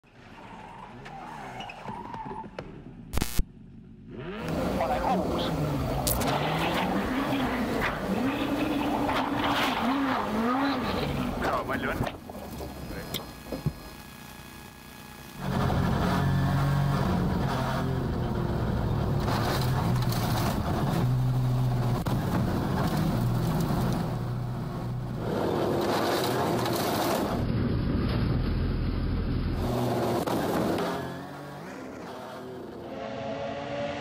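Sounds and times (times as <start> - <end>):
rally car engines running hard: 3.7 - 34.0.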